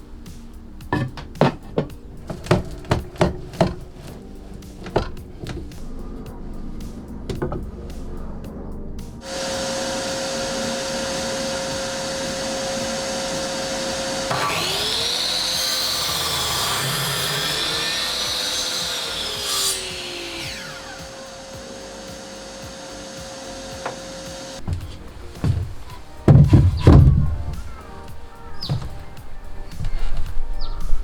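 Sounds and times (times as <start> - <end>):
electric power saw cutting wood: 2.3 - 5.6, 9.2 - 29.2.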